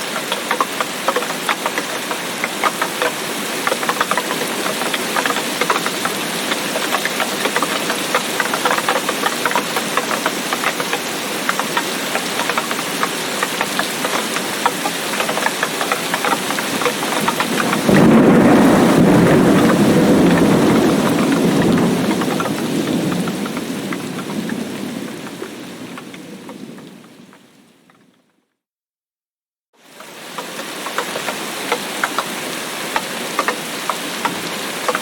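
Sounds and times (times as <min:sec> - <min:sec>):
heavy rain falling: 0:00.0 - 0:28.2, 0:29.8 - 0:35.0
thunderclap rumbling: 0:16.3 - 0:27.5.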